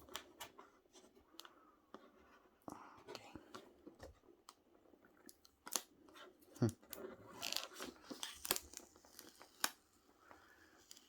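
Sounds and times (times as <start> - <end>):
seal strip tearing and crinkling: 7.3 - 9.8.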